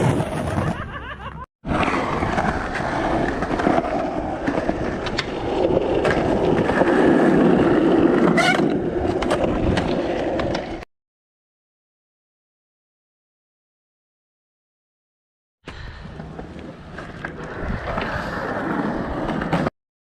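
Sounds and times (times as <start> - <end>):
skateboard wheels rolling on concrete: 0.0 - 10.9, 15.7 - 19.7
skateboard clacks: 1.7 - 10.8.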